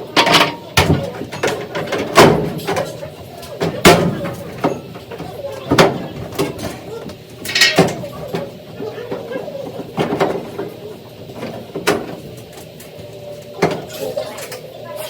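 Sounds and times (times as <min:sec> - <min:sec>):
metal parts clicking and knocking: 0:00.1 - 0:06.8, 0:07.4 - 0:08.5.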